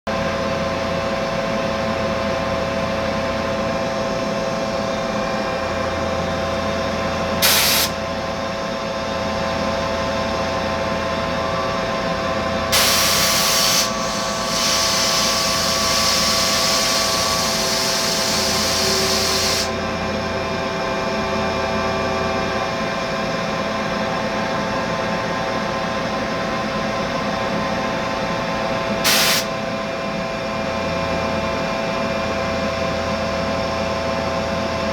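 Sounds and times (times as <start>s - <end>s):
bursts of hiss: 7.4s - 8.0s.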